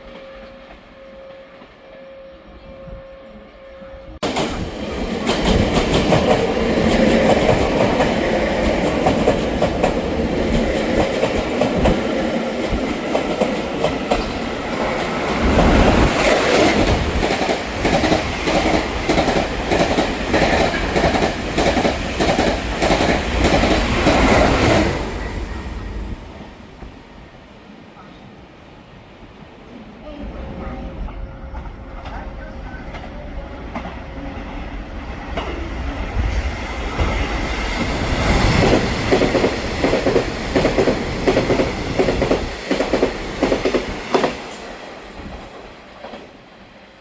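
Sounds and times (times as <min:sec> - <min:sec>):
train wheels clacking over rail joints: 0:04.2 - 0:25.6, 0:35.1 - 0:46.9.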